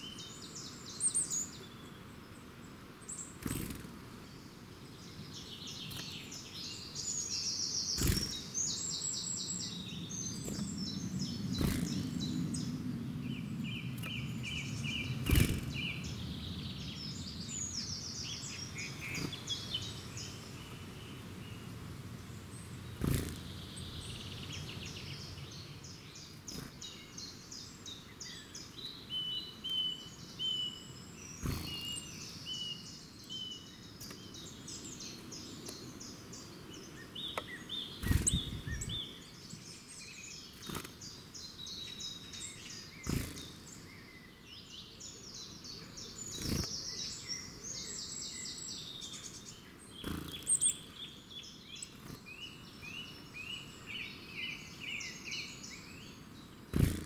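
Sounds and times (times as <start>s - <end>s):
songbirds singing: 0.0s - 57.0s.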